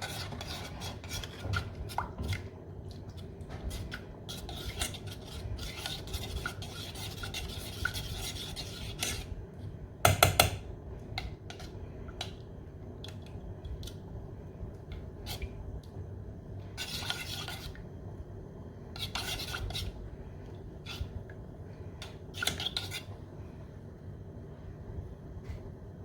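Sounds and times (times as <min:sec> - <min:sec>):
spoon scraping a dish: 0:00.0 - 0:02.5, 0:03.1 - 0:09.4, 0:11.2 - 0:12.3, 0:16.8 - 0:17.8, 0:18.9 - 0:20.0, 0:20.8 - 0:21.2, 0:22.0 - 0:23.2.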